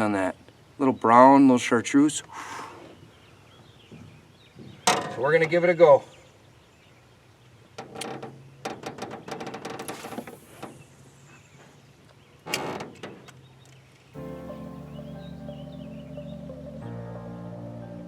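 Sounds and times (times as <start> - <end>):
fishing line hissing out: 9.9 - 11.4
soft ambient music: 14.2 - 18.0.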